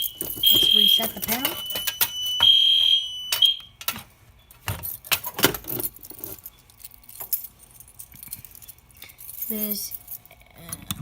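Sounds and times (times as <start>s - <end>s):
keys jingling: 0.0s - 2.4s, 4.7s - 10.4s
fire alarm high steady tone: 0.0s - 3.8s.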